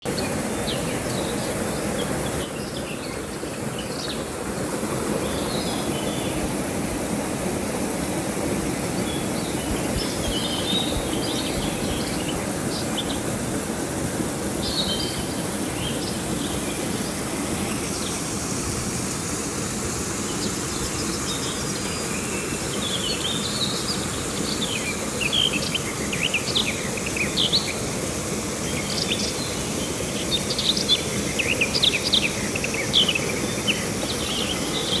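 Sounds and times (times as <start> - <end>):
river water rushing: 0.0 - 35.0
birds chirping: 8.8 - 18.2, 20.4 - 35.0.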